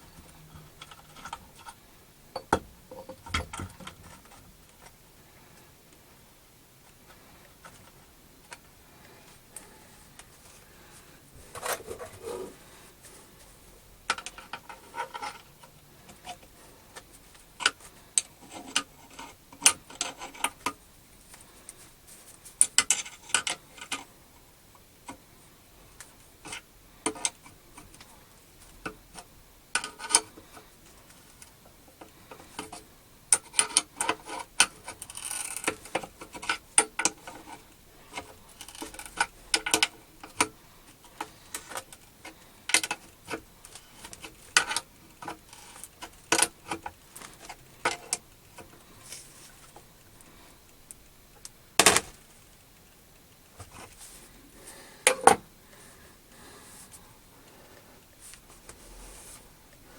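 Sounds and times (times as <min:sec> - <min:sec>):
hard objects clicking and knocking: 0:00.5 - 0:04.9, 0:51.4 - 0:52.3, 0:55.0 - 0:55.5.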